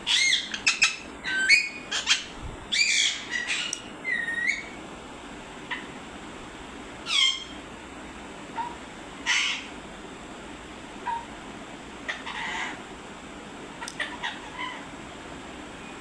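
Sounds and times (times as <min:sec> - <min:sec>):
parrot squawking and chirping: 0:00.1 - 0:04.8, 0:07.0 - 0:07.6, 0:08.6 - 0:09.7, 0:12.1 - 0:12.8, 0:13.9 - 0:14.8.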